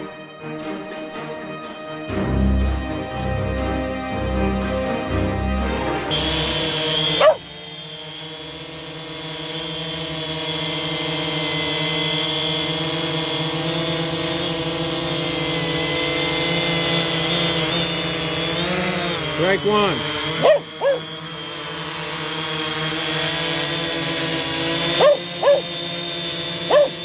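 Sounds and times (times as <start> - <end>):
drone propellers whining: 2.1 - 27.0.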